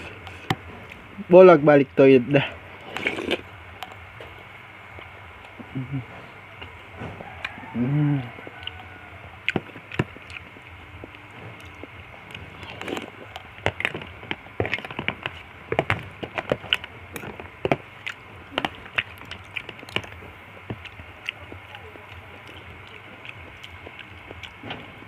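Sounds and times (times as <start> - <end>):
mouth clicks and smacks chewing: 8.4 - 15.5, 16.3 - 24.8.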